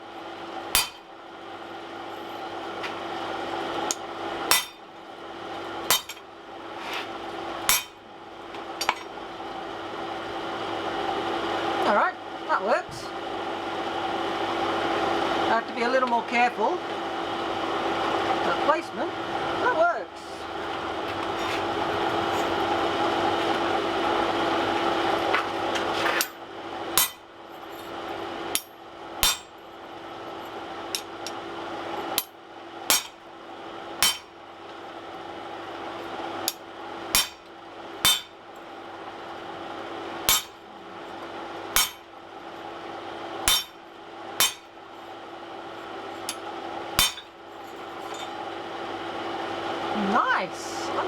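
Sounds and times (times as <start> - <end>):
steady hum: 0.0 - 51.0
hammer ringing on anvil: 0.8 - 1.1, 4.5 - 4.8, 5.9 - 6.2, 7.7 - 8.0, 27.0 - 27.2, 28.5 - 29.6, 32.9 - 33.2, 34.0 - 34.3, 36.5 - 38.4, 40.3 - 40.6, 41.8 - 42.1, 43.4 - 43.8, 44.4 - 44.7, 47.0 - 47.4.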